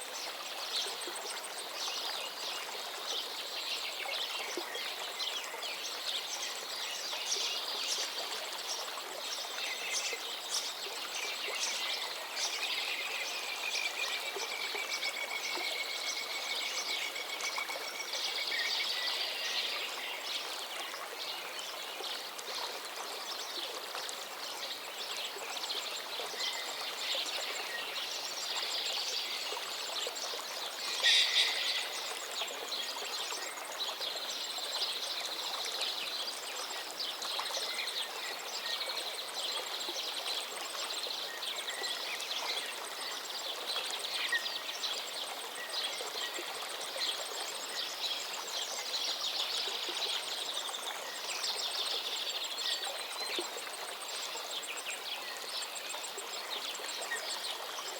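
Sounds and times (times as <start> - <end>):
river water babbling: 0.0 - 57.9
birds calling: 30.9 - 32.2.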